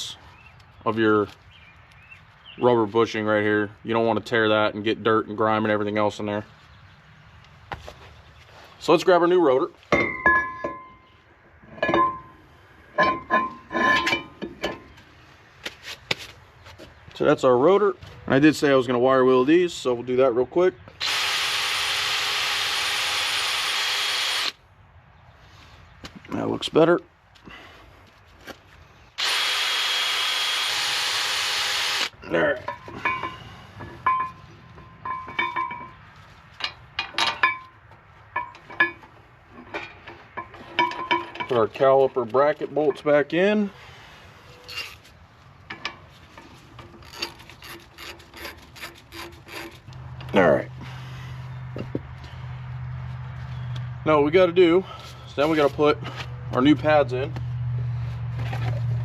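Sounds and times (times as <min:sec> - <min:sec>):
metal parts clinking and knocking: 0:09.9 - 0:11.1, 0:11.7 - 0:12.3, 0:13.0 - 0:14.9, 0:32.6 - 0:36.0, 0:36.6 - 0:42.0
metal brake rotor clanking: 0:09.9 - 0:15.0, 0:32.6 - 0:41.9.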